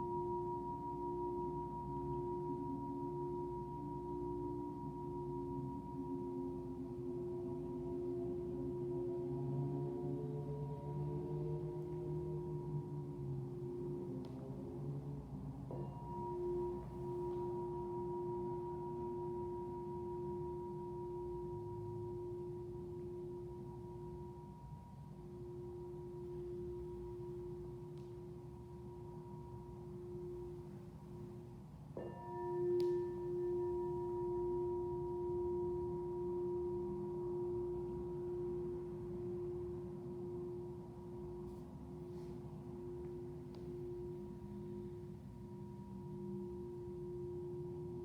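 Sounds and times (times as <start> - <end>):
singing bowl ringing: 0.0 - 48.0.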